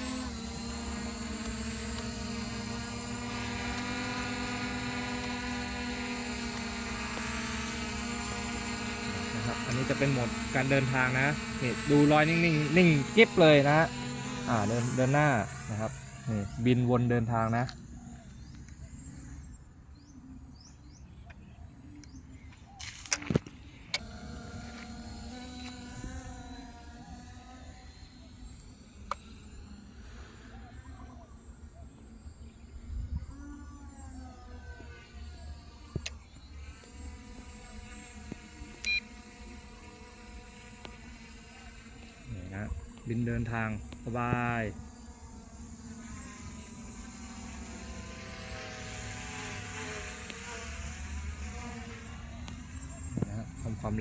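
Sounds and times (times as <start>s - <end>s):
steady pitched hum: 0.0s - 22.5s, 23.6s - 54.0s
drone motors whining: 0.0s - 54.0s
sharp clicks: 22.8s - 24.1s.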